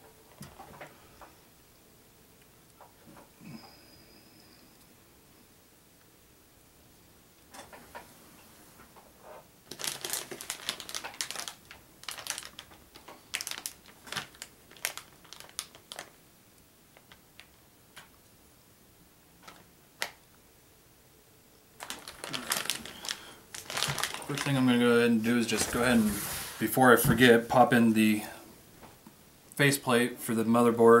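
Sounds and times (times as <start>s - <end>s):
plastic packaging crinkling: 9.6s - 16.2s, 21.8s - 27.4s.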